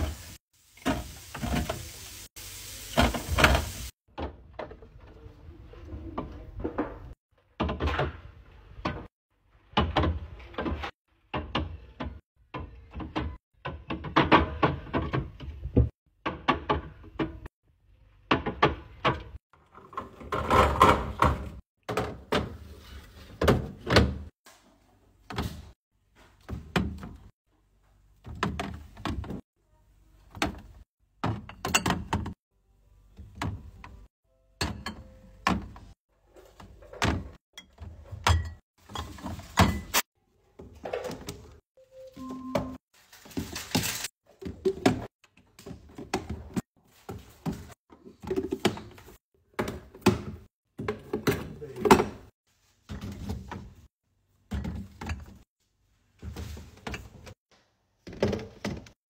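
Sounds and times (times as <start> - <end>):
containers and drinks clattering: 18.4 - 24.3, 34.6 - 41.6, 42.2 - 53.9.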